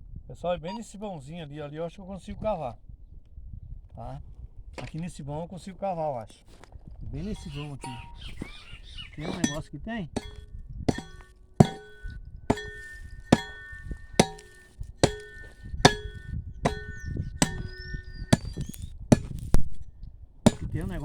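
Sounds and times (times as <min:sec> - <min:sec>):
hoe chopping into ground: 0:07.3 - 0:19.8, 0:20.5 - 0:21.0.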